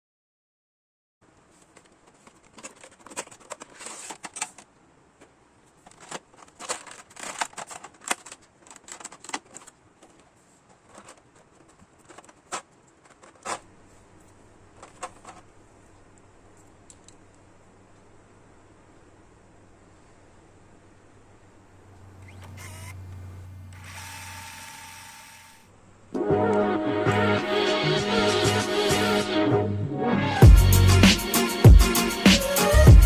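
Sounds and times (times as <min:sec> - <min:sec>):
plastic parts clicking and rattling: 0:01.5 - 0:13.7, 0:14.7 - 0:15.5.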